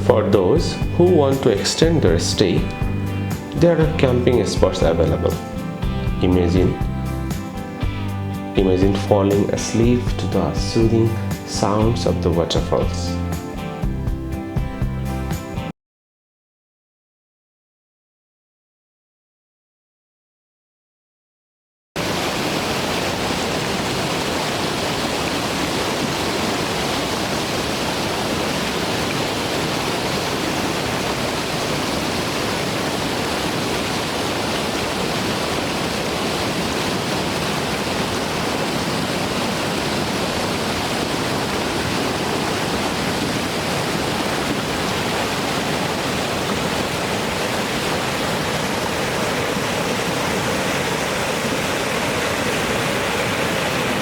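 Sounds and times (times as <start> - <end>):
waterfall rushing: 22.0 - 54.0.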